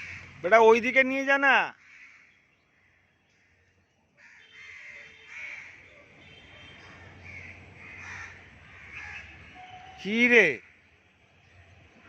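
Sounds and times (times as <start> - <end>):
crows cawing: 0.0 - 0.5, 1.7 - 9.7, 10.6 - 10.9.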